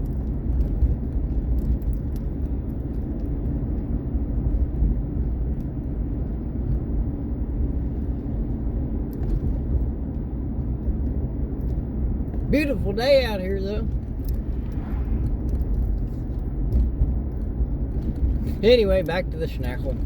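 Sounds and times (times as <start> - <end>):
faint clicks and rattles: 0.0 - 6.8
vehicle engine and road rumble: 0.0 - 20.0.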